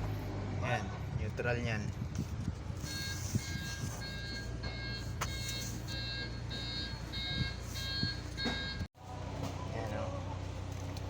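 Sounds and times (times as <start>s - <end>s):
forklift warning beeps: 2.8s - 8.9s.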